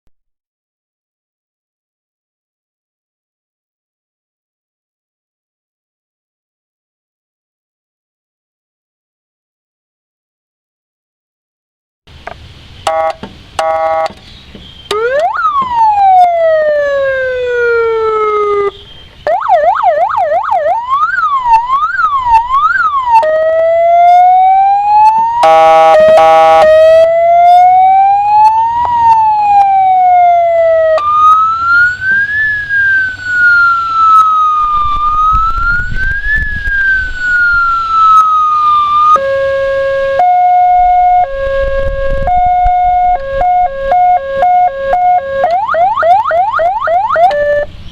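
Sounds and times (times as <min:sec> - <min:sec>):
electronic siren: 0:12.9 - 0:14.2, 0:14.9 - 0:47.7
short horn blast: 0:25.4 - 0:26.9, 0:39.2 - 0:45.5.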